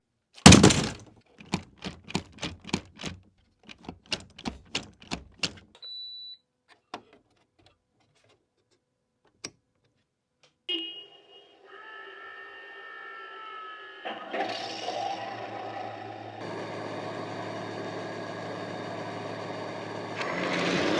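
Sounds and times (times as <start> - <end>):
model engine sound: 15.3 - 20.9.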